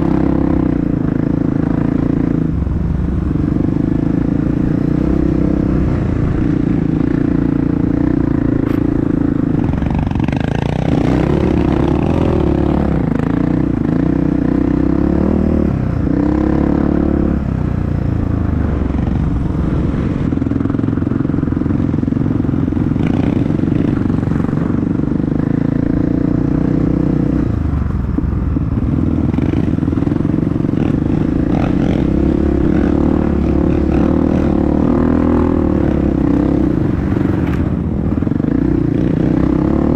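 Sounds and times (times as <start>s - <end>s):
dirt bike engine revving: 4.0s - 17.4s, 29.3s - 37.7s, 38.4s - 39.9s.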